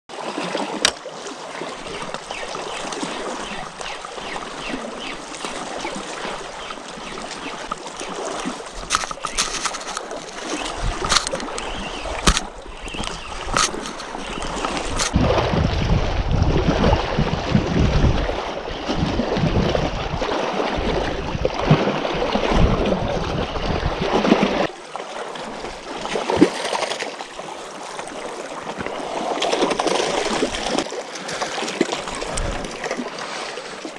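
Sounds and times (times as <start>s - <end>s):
water splashing and trickling: 0.1s - 33.9s
sharp clicks and knocks: 11.0s - 14.1s.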